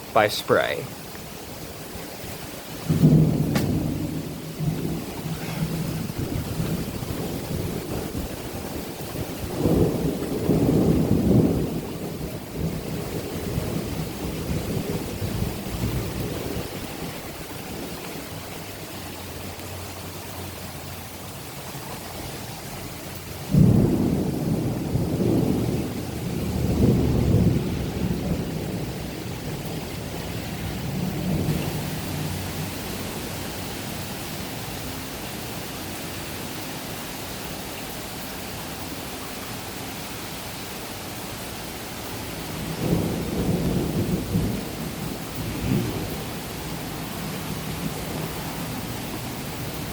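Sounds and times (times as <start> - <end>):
rain hissing: 0.0 - 49.9
rolling thunder: 2.8 - 18.4, 23.4 - 33.3, 42.5 - 49.9.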